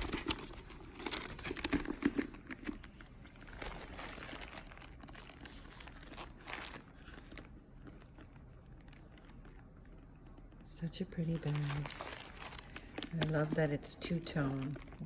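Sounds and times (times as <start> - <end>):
packaging crinkling: 0.0 - 15.0.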